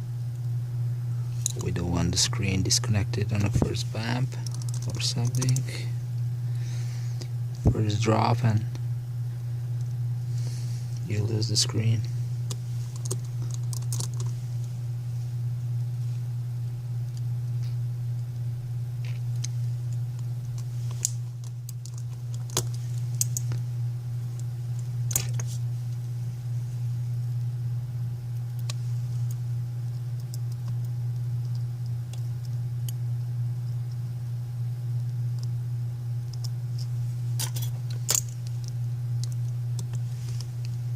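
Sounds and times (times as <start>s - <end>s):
steady low hum: 0.0s - 40.9s.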